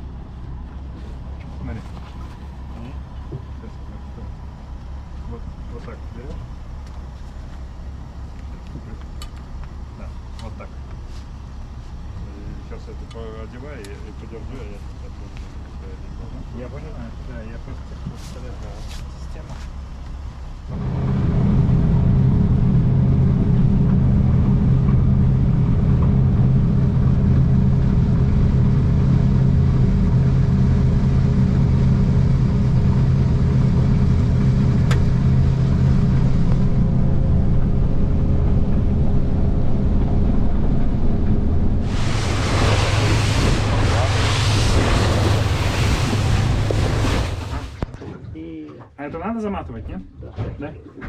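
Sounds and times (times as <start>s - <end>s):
boat engine hum: 0.0s - 51.0s
loud rushing hiss: 41.8s - 47.8s.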